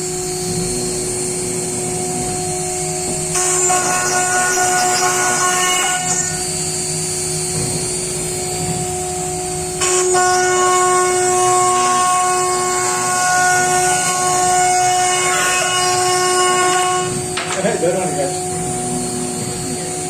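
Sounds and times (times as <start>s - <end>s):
router bit cutting wood: 0.0s - 7.5s, 9.3s - 20.0s
router spindle whine: 0.0s - 20.0s.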